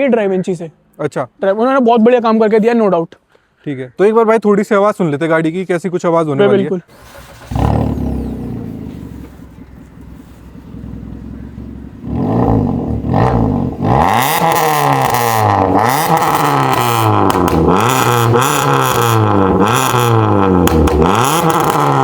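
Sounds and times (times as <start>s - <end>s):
car engine revving: 6.9s - 22.0s.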